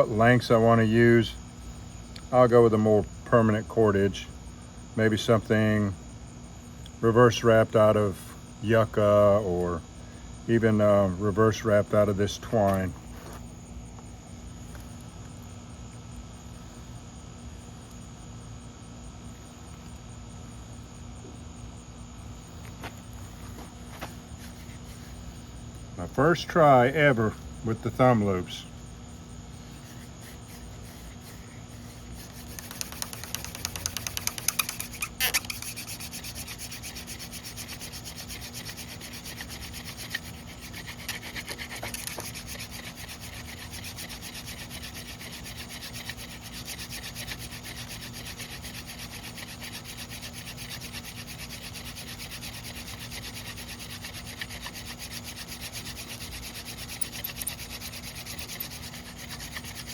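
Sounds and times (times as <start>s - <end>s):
wood rasping on wood: 29.8s - 59.9s.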